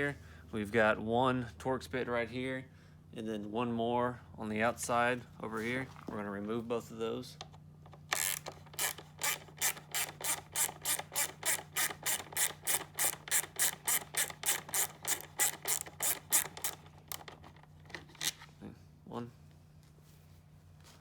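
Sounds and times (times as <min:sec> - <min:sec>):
ratchet clicking: 0:08.0 - 0:17.4.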